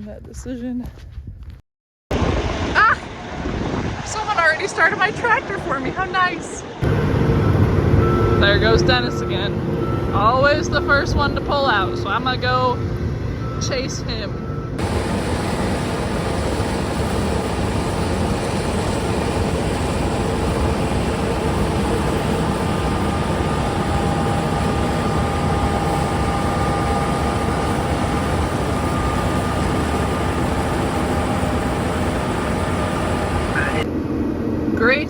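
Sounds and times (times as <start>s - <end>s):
tractor engine running: 14.4s - 33.8s.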